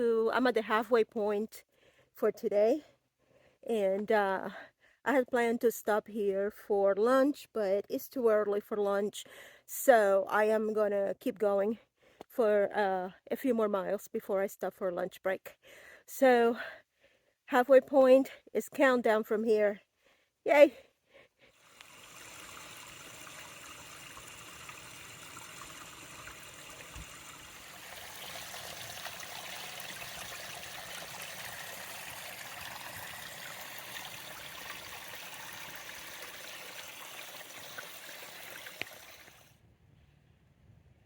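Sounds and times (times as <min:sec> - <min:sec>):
creek water trickling: 0:21.5 - 0:39.6.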